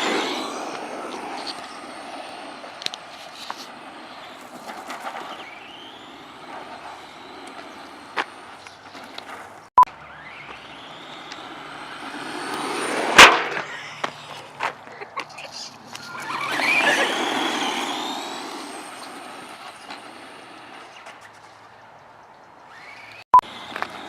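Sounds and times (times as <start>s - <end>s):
rc truck motor whining: 0.0s - 14.8s, 15.4s - 24.0s
wheels rushing on ground: 0.0s - 24.0s
clicks: 2.6s - 3.8s, 10.5s - 11.5s.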